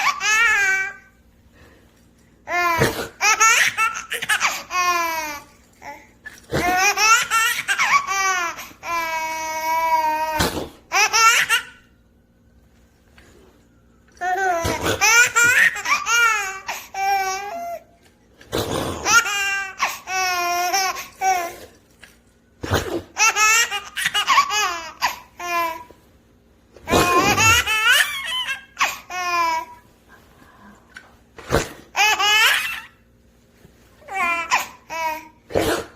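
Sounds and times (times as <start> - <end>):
baby laughing and squealing: 0.0 - 1.0, 2.5 - 6.0, 6.6 - 11.8, 14.3 - 17.8, 23.1 - 25.9, 26.8 - 29.8, 31.9 - 33.0.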